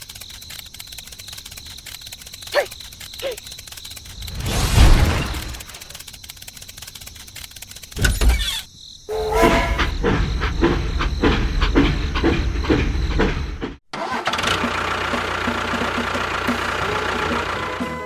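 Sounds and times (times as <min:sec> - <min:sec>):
small engine chugging: 0:00.0 - 0:04.5, 0:05.4 - 0:18.0
machine running: 0:09.1 - 0:13.8.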